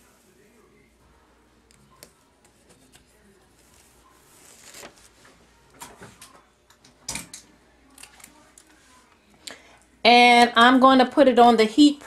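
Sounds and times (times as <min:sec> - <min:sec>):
paper rustling: 0:02.5 - 0:06.2.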